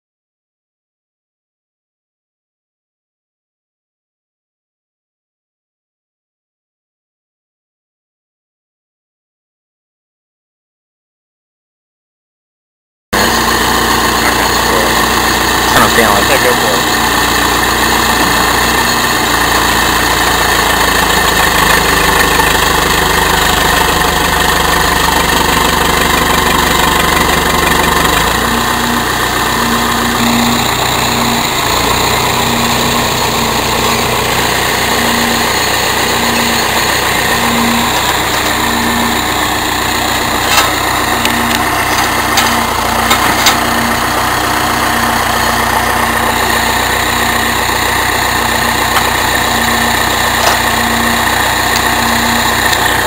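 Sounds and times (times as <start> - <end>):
tractor engine running: 13.2 - 53.0.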